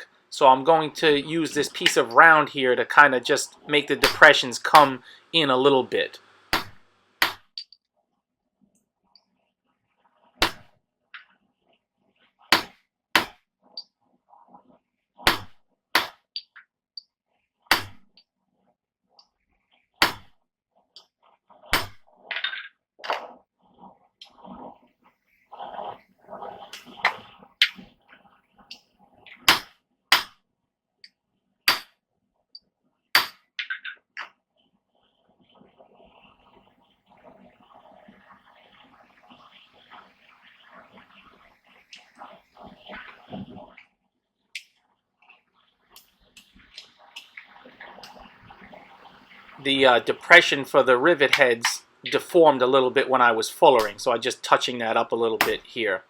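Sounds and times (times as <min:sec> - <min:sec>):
hammer striking steel on anvil: 0:04.0 - 0:04.2, 0:06.6 - 0:07.4, 0:10.4 - 0:10.7, 0:15.3 - 0:16.1, 0:17.7 - 0:18.0, 0:31.7 - 0:31.9, 0:33.2 - 0:33.4.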